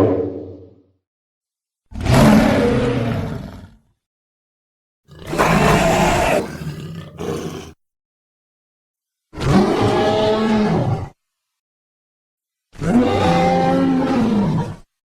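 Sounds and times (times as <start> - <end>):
dinosaur roar: 5.1 - 7.8.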